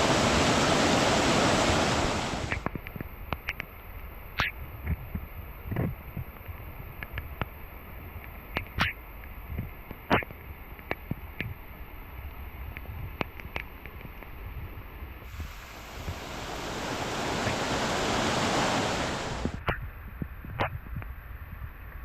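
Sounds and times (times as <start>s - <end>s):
rushing noise: 0.0s - 2.6s, 15.3s - 19.6s.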